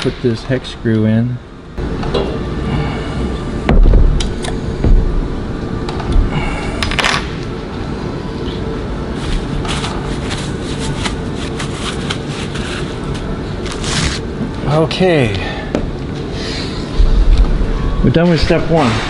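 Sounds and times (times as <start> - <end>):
steady low rumble: 0.0 - 19.0
heavy metal knocks: 3.6 - 6.3.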